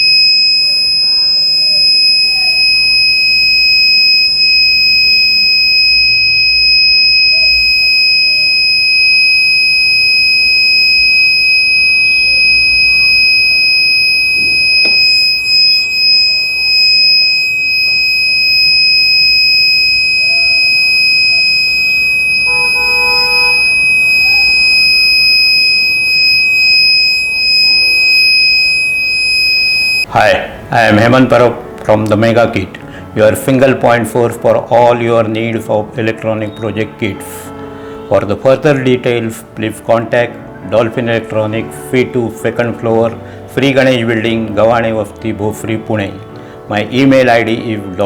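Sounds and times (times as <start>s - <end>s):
smoke detector buzzer tone: 0.0s - 30.1s.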